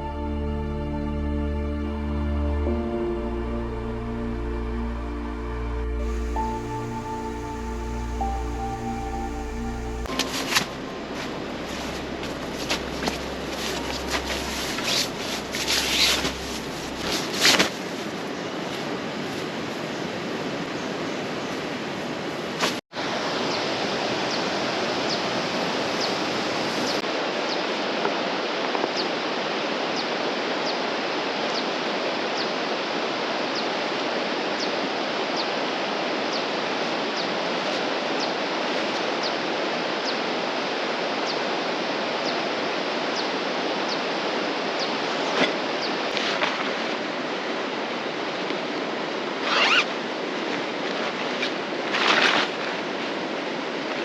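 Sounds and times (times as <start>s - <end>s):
river flowing: 0.0s - 54.0s.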